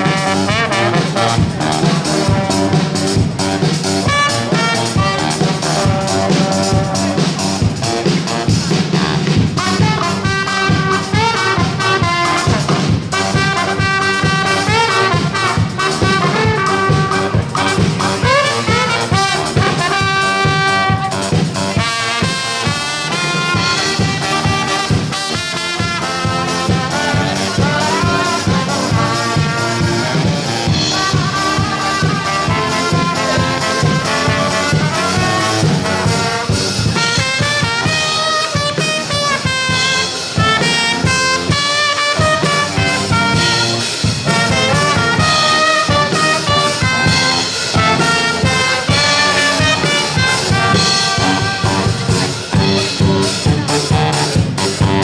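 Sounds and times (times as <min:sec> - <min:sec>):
brass band playing: 0:00.0 - 0:55.0
steady beat: 0:00.0 - 0:55.0
trumpets and trombones: 0:00.0 - 0:55.0.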